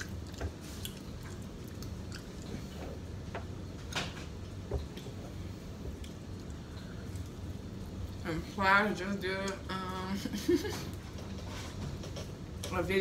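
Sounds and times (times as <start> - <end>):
close chewing: 0.0 - 3.0.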